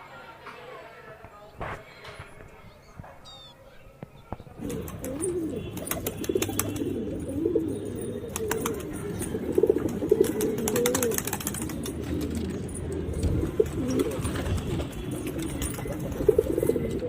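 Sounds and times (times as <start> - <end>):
pigeons cooing: 4.5 - 17.0.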